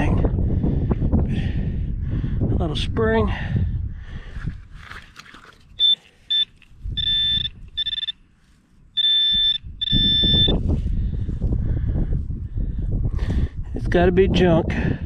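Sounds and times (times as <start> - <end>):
dirt and hands rustling: 4.4 - 9.6
metal detector beeping: 5.8 - 10.6.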